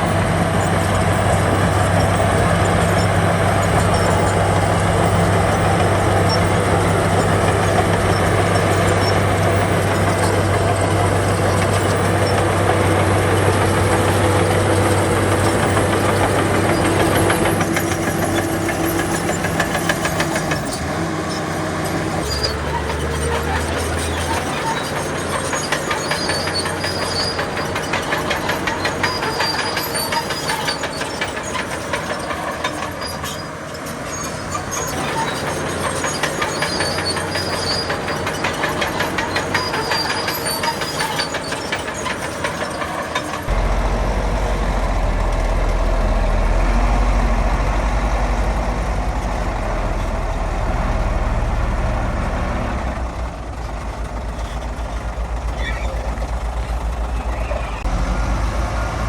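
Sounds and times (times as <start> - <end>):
rapid metallic clatter: 0.0 - 50.6
diesel earthmoving machinery running: 0.0 - 59.0
faint high squeals: 22.2 - 51.6
deep steady engine drone: 43.5 - 59.0.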